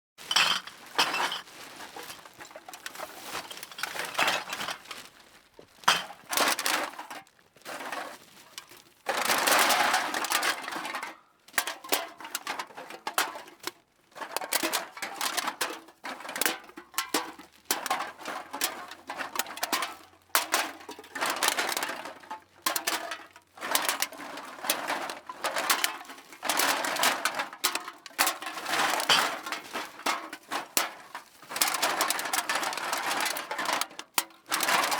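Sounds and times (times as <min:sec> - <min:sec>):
bag rustling: 0:00.2 - 0:05.9.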